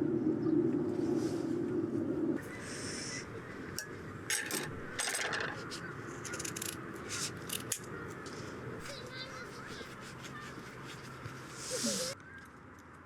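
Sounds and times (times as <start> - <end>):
light metallic clinks: 3.7 - 7.9.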